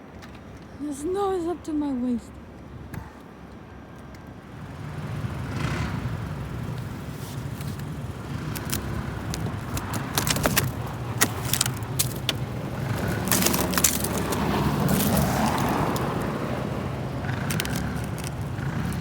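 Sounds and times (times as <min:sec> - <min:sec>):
vehicle engine humming: 0:04.4 - 0:19.0
sharp crackling clicks: 0:07.5 - 0:16.4, 0:17.1 - 0:19.0.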